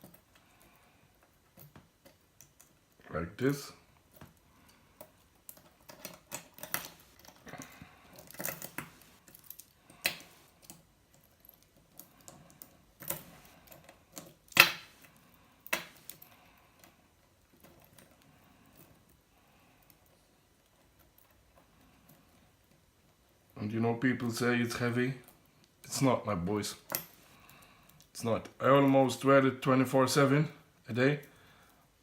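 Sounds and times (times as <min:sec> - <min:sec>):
faint handling noise: 0:00.0 - 0:19.2.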